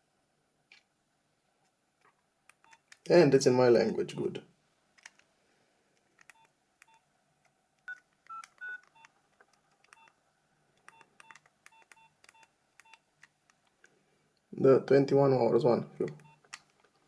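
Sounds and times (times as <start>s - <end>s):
phone keypad beeps: 7.9s - 9.1s, 9.9s - 10.1s, 10.9s - 13.0s, 16.1s - 16.5s.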